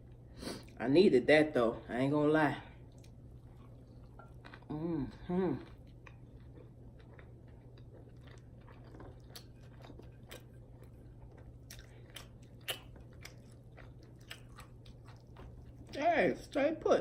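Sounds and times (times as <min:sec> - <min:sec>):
faint low hum: 0:00.0 - 0:17.0
chewing and biting food: 0:02.8 - 0:16.0.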